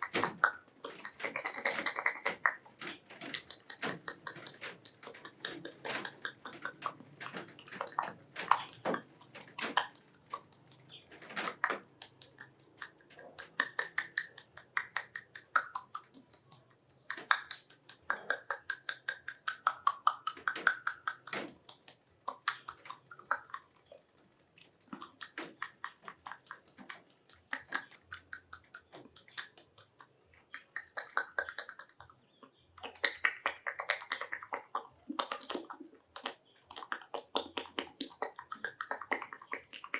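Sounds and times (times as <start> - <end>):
wet mouth smacking and slurping: 11.9 - 32.0, 32.8 - 39.9.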